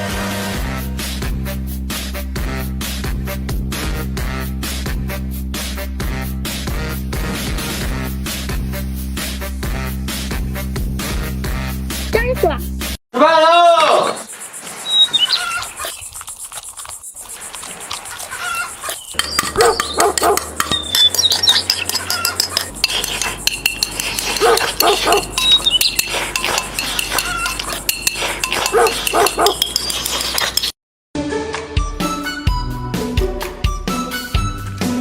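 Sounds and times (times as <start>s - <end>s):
music with low bass note: 0.6s - 12.9s
high chirps: 14.1s - 16.3s, 18.4s - 30.7s
small dog barking: 19.5s - 20.5s, 24.4s - 25.3s, 28.7s - 29.6s.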